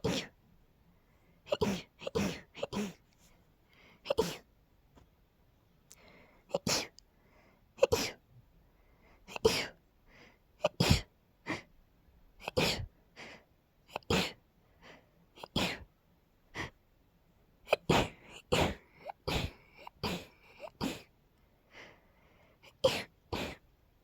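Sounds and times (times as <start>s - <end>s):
woman sneezing: 0.0s - 0.3s, 1.5s - 3.0s, 4.1s - 4.5s, 6.5s - 7.0s, 7.8s - 8.2s, 9.3s - 9.8s, 10.6s - 11.1s, 12.4s - 12.9s, 13.9s - 14.4s, 15.4s - 15.9s, 17.7s - 21.1s, 22.7s - 23.6s
short breaths: 0.9s - 4.4s, 5.9s - 7.8s, 14.2s - 15.8s, 17.8s - 23.6s.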